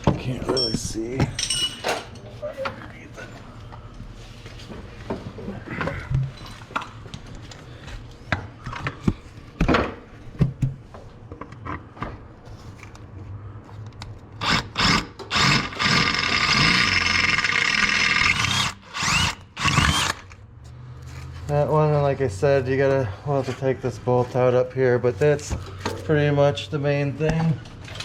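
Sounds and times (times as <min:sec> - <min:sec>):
power drill whining: 0:14.4 - 0:20.3.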